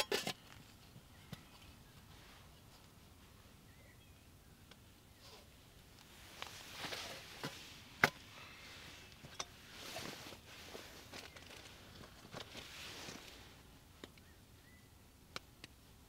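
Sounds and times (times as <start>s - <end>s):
camp gear rustling: 5.2s - 13.6s.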